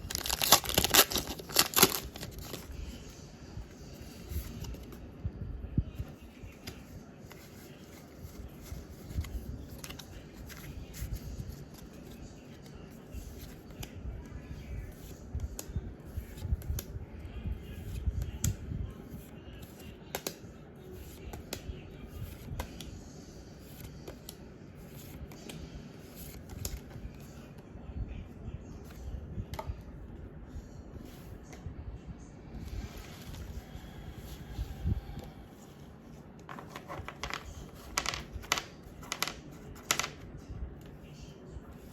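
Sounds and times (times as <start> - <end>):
trading cards clicking and snapping: 0.1 - 2.7.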